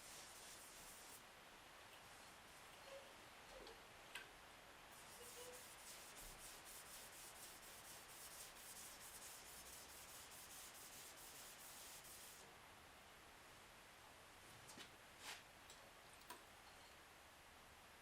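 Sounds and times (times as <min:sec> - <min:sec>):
sanding block rubbing metal panel: 0:00.0 - 0:01.2, 0:05.0 - 0:12.4.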